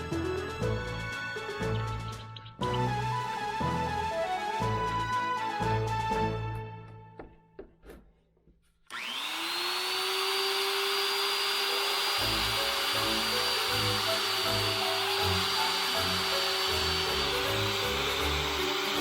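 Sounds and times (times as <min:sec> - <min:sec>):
electric motor whining: 0:08.9 - 0:19.0.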